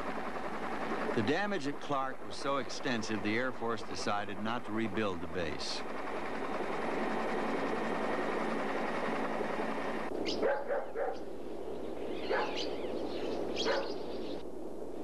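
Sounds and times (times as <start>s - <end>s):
dog barking and yelping: 10.3s - 11.2s, 12.2s - 12.7s, 13.6s - 14.0s.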